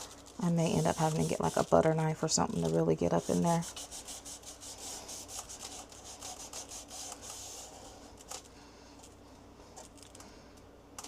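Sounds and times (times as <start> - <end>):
scrubbing and scraping residue: 0.0 - 8.4.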